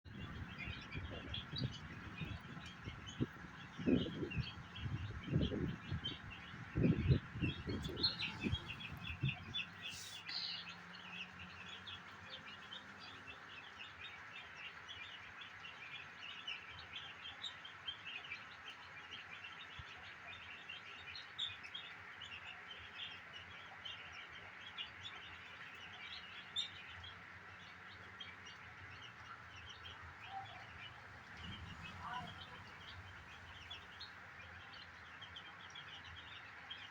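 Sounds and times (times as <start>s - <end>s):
low thumps and rumbles: 0.1s - 9.7s
chicks peeping: 0.1s - 15.8s, 16.4s - 36.9s.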